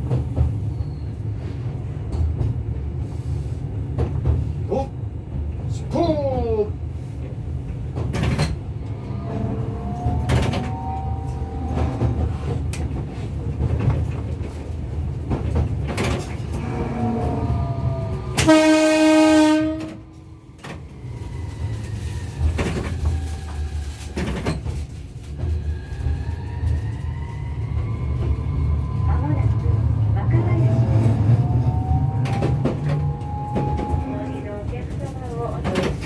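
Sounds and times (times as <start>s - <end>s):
tram rumbling: 0.0s - 36.0s
tram horn blast: 8.7s - 13.0s, 16.4s - 23.6s, 27.4s - 35.6s.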